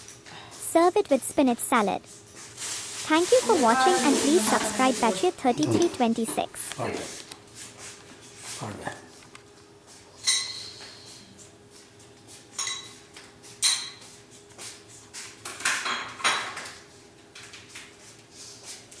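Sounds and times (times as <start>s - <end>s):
dishes and utensils clinking: 3.1s - 6.5s, 10.2s - 10.7s, 12.5s - 13.0s.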